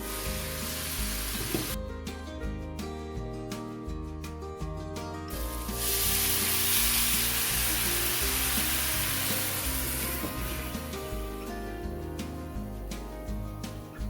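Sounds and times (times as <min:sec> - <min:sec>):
patties sizzling in a pan: 0:00.0 - 0:01.8, 0:05.4 - 0:11.4
background music: 0:00.0 - 0:14.0.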